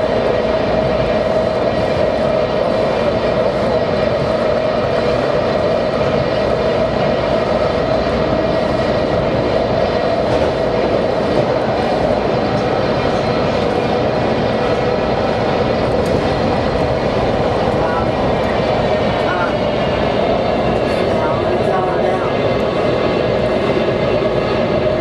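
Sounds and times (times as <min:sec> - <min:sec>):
train running on track: 0:00.0 - 0:25.0.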